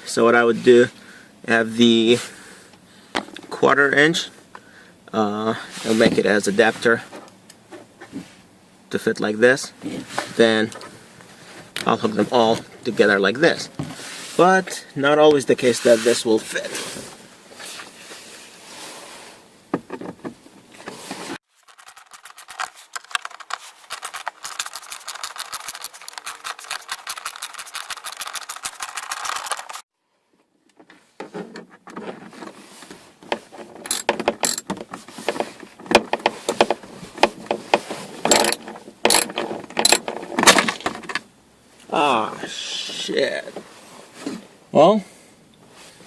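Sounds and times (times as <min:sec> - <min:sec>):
socket ratchet clicking: 0:23.4 - 0:29.8, 0:38.3 - 0:40.0.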